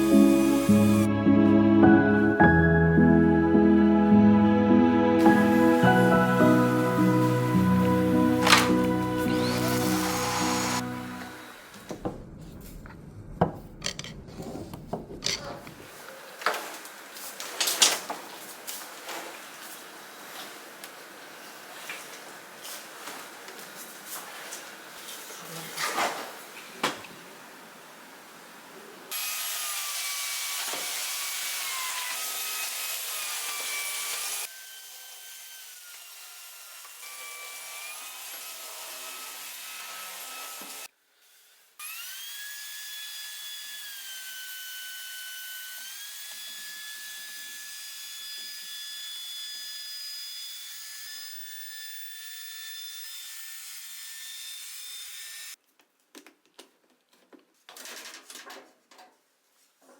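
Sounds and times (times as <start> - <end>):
stick vacuum motor whine: 6.7 - 12.0.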